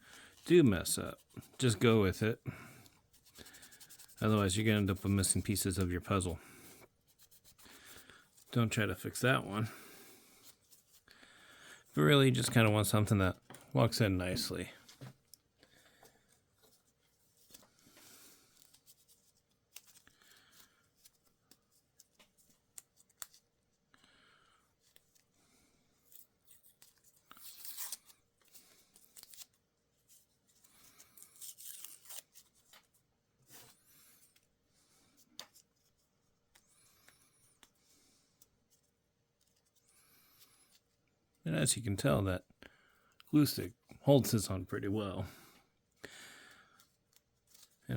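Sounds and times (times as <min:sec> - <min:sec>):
paper tearing and scraping: 0:26.1 - 0:28.3, 0:31.1 - 0:32.7.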